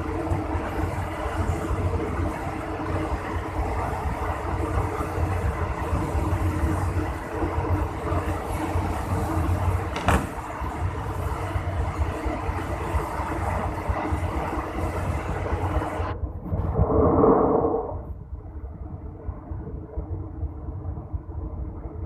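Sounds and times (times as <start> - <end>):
train running rumble: 0.0 - 16.2
faint steady hum: 0.0 - 22.0.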